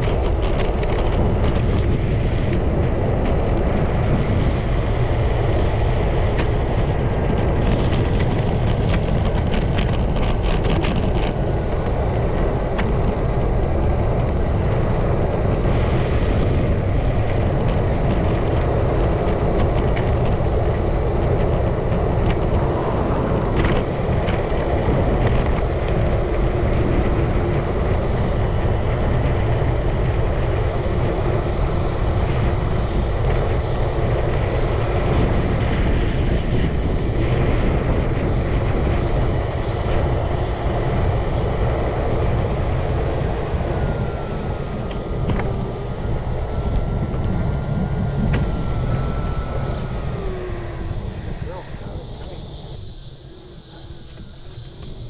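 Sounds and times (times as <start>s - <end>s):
scooter engine running: 0.0s - 55.0s
wind on microphone: 0.0s - 55.0s.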